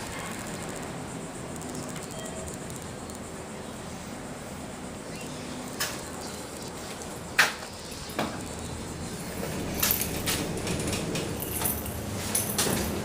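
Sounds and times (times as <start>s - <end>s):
elevator doors rattling slide: 8.0s - 13.0s.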